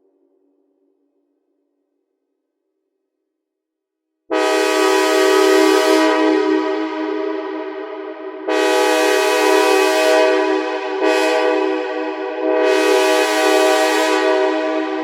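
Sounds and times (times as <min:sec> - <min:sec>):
synthesizer imitating train horn: 0:04.3 - 0:15.0.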